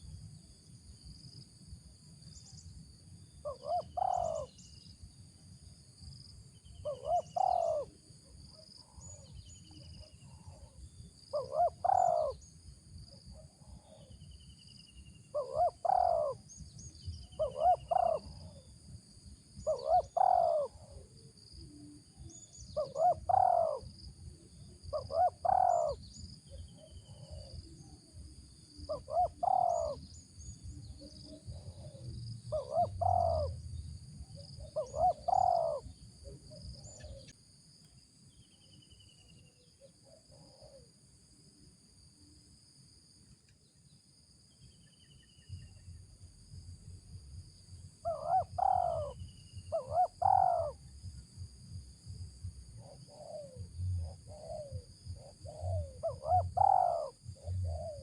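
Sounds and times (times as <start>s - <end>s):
dove cooing: 3.4s - 4.6s, 6.8s - 8.0s, 11.3s - 12.4s, 15.3s - 16.5s, 17.3s - 18.7s, 19.6s - 23.9s, 24.8s - 27.8s, 28.7s - 30.1s, 31.0s - 33.6s, 34.4s - 37.3s, 48.0s - 50.9s, 52.7s - 58.0s.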